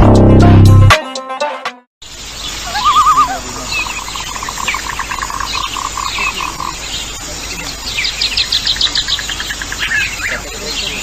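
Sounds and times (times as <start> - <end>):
high fast animal trill: 2.6 - 6.8
pulsed animal call: 2.6 - 6.8.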